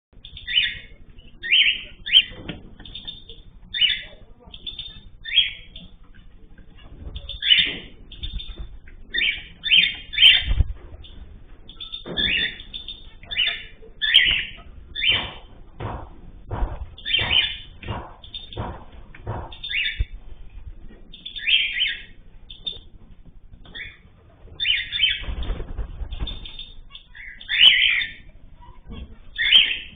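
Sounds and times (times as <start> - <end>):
cage birds chirping: 0.2 - 29.9
low thumps: 15.1 - 21.1.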